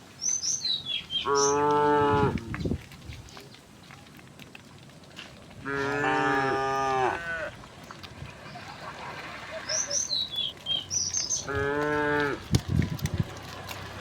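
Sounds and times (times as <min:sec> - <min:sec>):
high bird chirps: 0:00.2 - 0:01.6, 0:09.6 - 0:11.5
cow mooing: 0:01.2 - 0:02.4, 0:05.6 - 0:07.5, 0:11.4 - 0:12.5.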